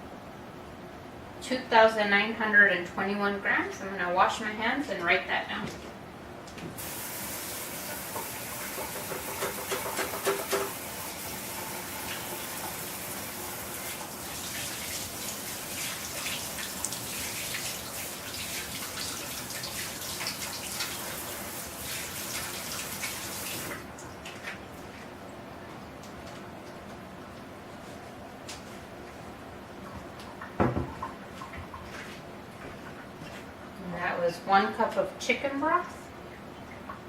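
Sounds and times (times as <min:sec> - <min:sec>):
tap running water: 0:06.8 - 0:25.0, 0:29.8 - 0:33.1.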